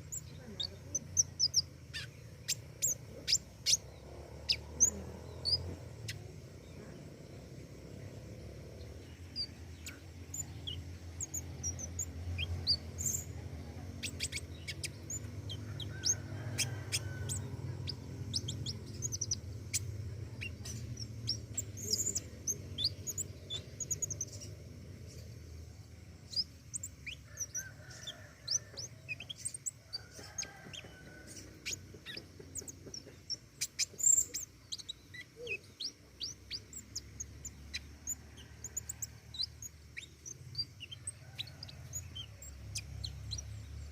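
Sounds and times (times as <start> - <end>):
songbird chirping: 0.0 - 43.9.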